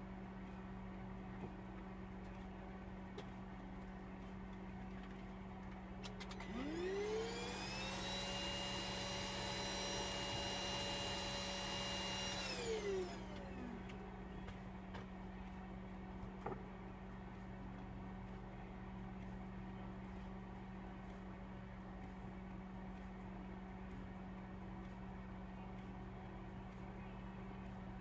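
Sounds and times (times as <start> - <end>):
small electric motor whine: 6.3 - 13.9.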